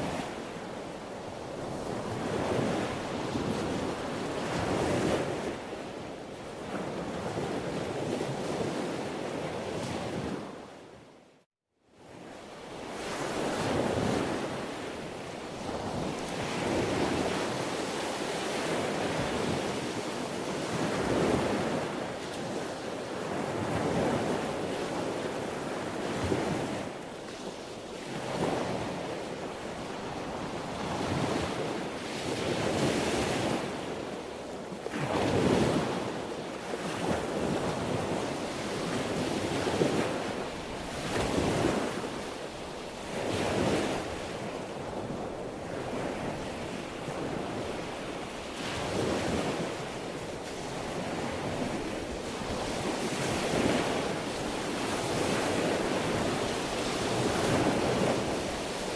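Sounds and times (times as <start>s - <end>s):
sea waves breaking: 12.8s - 58.9s.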